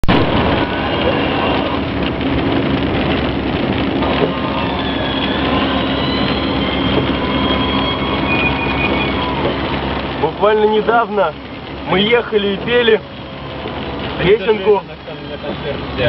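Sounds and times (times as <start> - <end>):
engine hum: 0.0 - 16.0
tyre road noise: 0.0 - 16.0
faint high whistling: 4.5 - 9.6.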